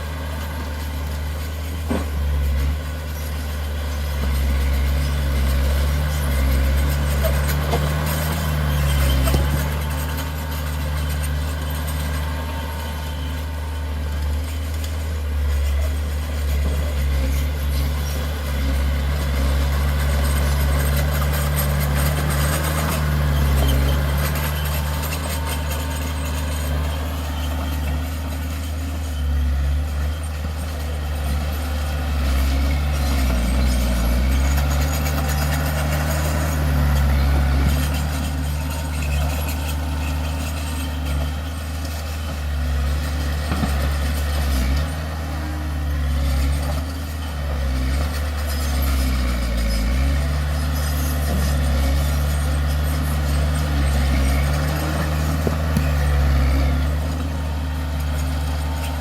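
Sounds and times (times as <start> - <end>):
heavy diesel engine rumbling: 0.0 - 59.0.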